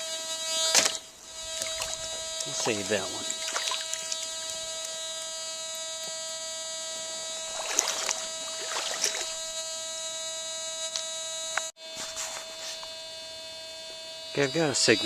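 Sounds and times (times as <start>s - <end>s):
metal detector hum: 0.0s - 15.0s.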